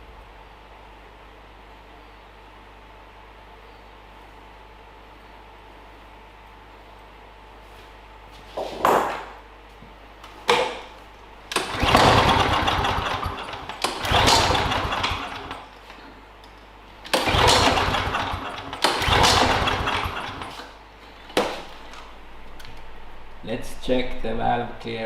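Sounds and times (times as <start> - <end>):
lawnmower engine pull-start: 11.5 - 15.7, 17.1 - 20.8.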